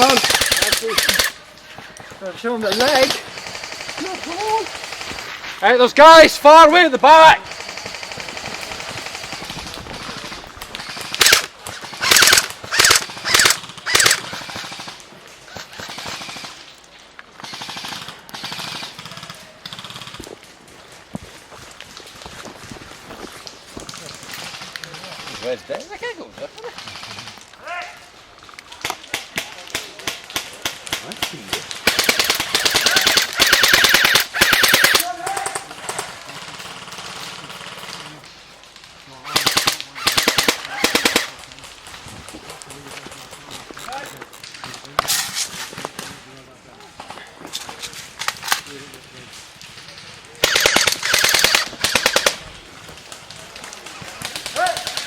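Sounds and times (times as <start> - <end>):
airsoft machine gun firing: 0.0 - 1.4, 2.6 - 5.4, 7.4 - 16.6, 26.7 - 27.4, 30.0 - 38.2, 39.3 - 41.4, 50.4 - 52.4
toy machine gun rattling: 0.0 - 1.4, 10.8 - 14.3, 31.8 - 35.0, 39.3 - 41.3, 50.4 - 52.4.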